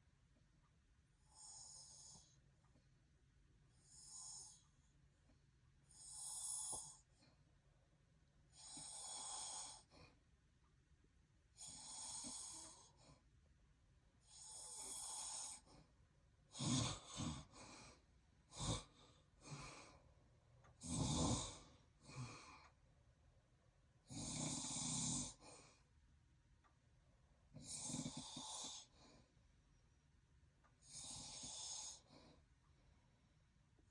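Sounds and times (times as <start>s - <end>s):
man snoring: 6.0s - 7.0s, 8.6s - 9.9s, 11.6s - 13.0s, 14.3s - 15.7s, 16.5s - 20.0s, 20.8s - 22.6s, 24.1s - 25.5s, 27.6s - 28.9s, 30.8s - 32.1s.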